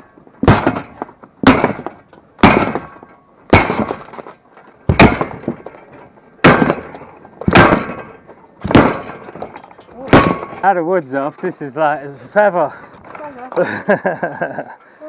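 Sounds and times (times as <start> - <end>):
sledgehammer striking wood and metal: 0.4 - 10.8.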